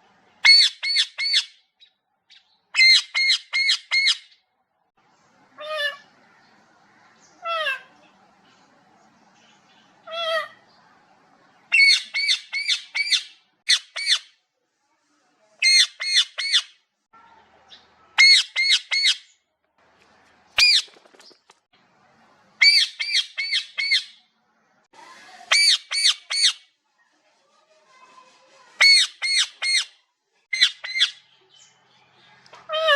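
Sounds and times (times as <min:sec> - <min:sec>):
parrot squawking: 0:00.4 - 0:01.6, 0:02.8 - 0:04.4, 0:10.0 - 0:10.6, 0:11.7 - 0:14.3, 0:15.6 - 0:16.8, 0:18.2 - 0:19.3, 0:20.6 - 0:20.9, 0:22.6 - 0:24.2, 0:25.5 - 0:26.6, 0:28.8 - 0:31.2.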